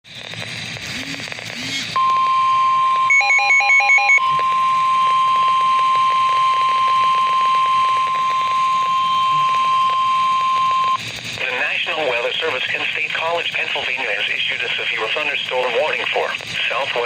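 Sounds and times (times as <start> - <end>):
steady high-pitched warning tone: 1.0 - 17.0
alternating high and low beeps: 1.6 - 11.4.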